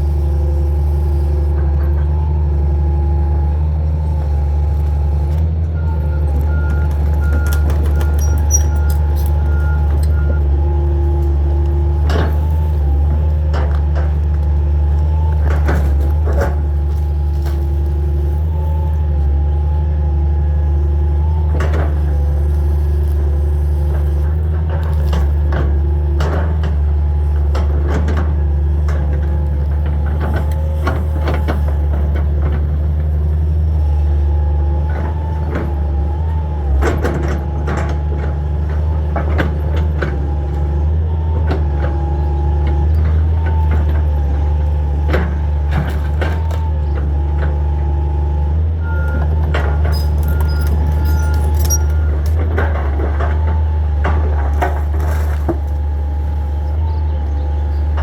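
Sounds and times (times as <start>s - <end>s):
excavator diesel engine running: 0.0s - 58.0s
wood and debris knocking: 6.4s - 10.4s.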